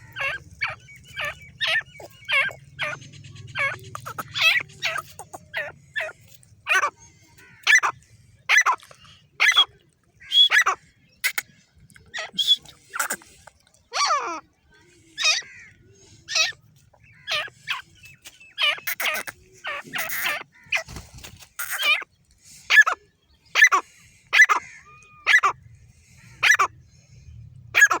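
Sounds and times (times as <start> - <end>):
francolin calling: 0.0 - 6.9.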